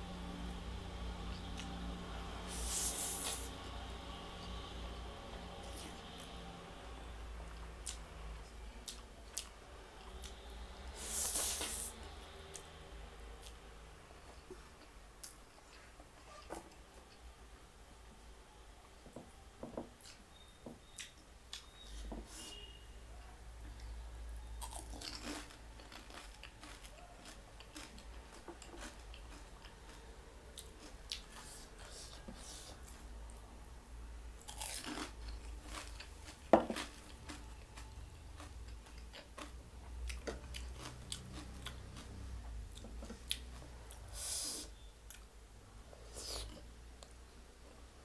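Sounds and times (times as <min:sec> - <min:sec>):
low steady hum: 0:00.0 - 0:48.0
person chewing food: 0:07.5 - 0:08.1, 0:24.6 - 0:33.1, 0:34.4 - 0:45.3.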